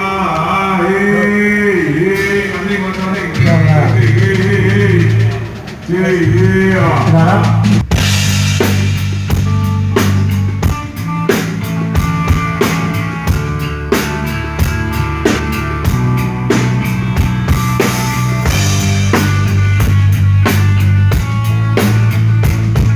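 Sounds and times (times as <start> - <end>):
drum kit beat: 0.0 - 22.9
held bass line: 0.0 - 22.9
sustained guitar or keyboard chords: 0.0 - 22.9.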